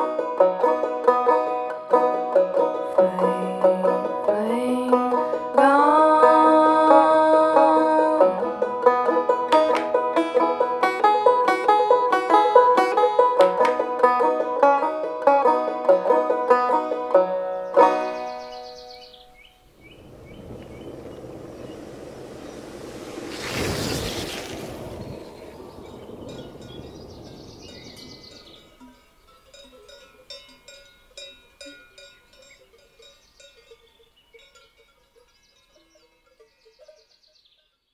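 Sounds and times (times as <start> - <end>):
plucked-string instrumental music: 0.0 - 19.2
metal cowbells clanking: 28.4 - 37.2.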